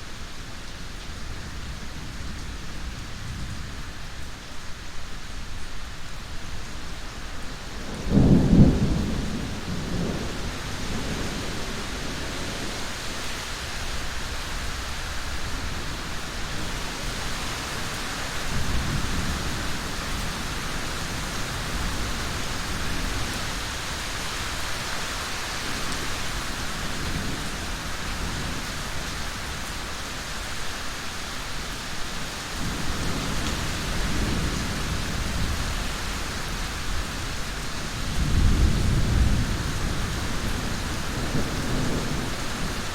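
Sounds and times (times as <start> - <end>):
steady rain: 0.0 - 42.9
thunder rumbling: 7.8 - 12.8, 32.6 - 42.9.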